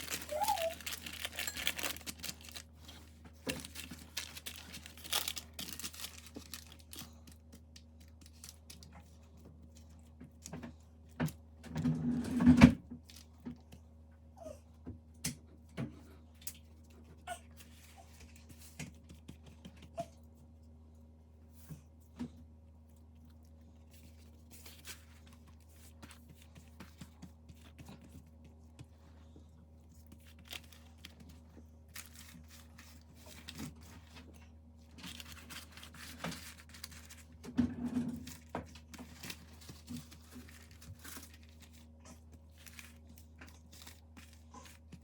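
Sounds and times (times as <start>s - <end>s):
crinkling and crunching: 0.0s - 13.7s, 22.9s - 28.7s, 29.8s - 45.0s.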